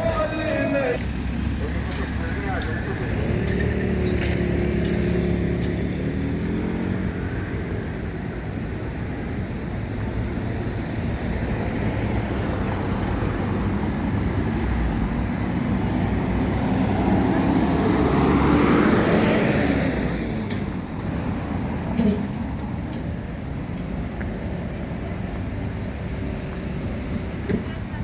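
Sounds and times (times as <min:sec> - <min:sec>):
vehicle passing close: 0:00.0 - 0:07.8, 0:11.2 - 0:22.9
traffic engine hum: 0:00.0 - 0:28.0.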